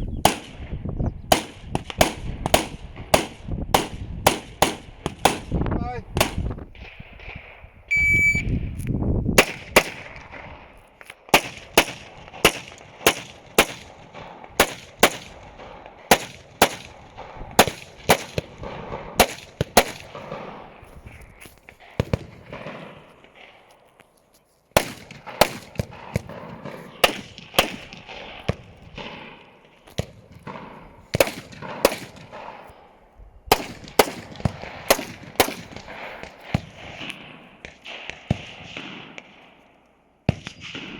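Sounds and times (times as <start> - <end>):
gunshots: 0.2 - 0.7, 1.3 - 7.7, 9.4 - 20.8, 21.8 - 23.6, 24.8 - 32.8, 33.5 - 39.6, 40.3 - 40.9
shot timer beep: 7.9 - 8.6.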